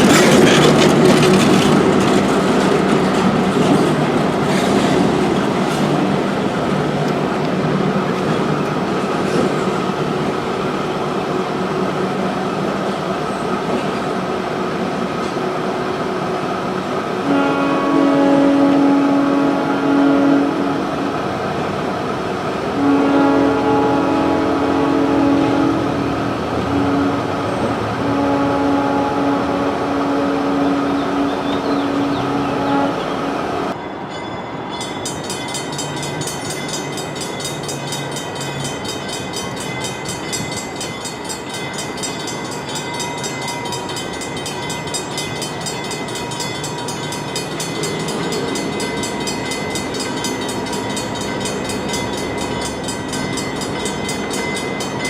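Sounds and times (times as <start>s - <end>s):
train running: 0.0s - 55.0s
locomotive horn blasts: 17.2s - 21.3s, 22.7s - 33.4s.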